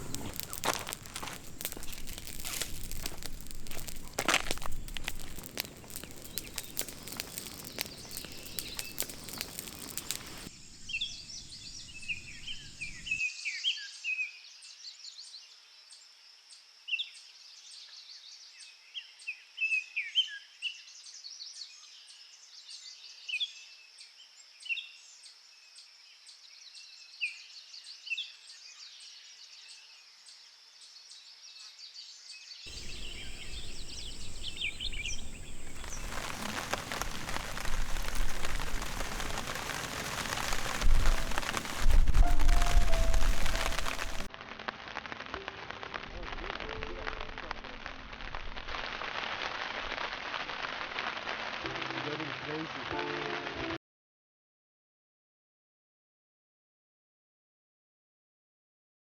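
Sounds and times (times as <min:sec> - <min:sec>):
dense crackling noise: 0:00.0 - 0:10.5, 0:32.7 - 0:53.7
steady hiss: 0:00.0 - 0:13.2, 0:32.7 - 0:46.5
bird chirps: 0:32.7 - 0:39.2, 0:40.6 - 0:44.3
high insect drone: 0:32.7 - 0:40.2.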